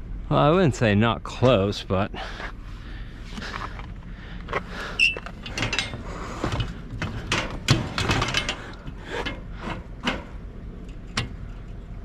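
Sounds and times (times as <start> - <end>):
scrap metal clicking and rattling: 3.4 - 11.9.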